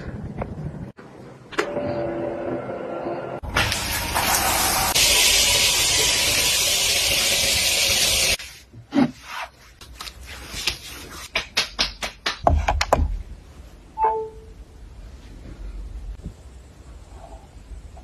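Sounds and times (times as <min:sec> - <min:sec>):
brief high tone: 0:14.0 - 0:14.6.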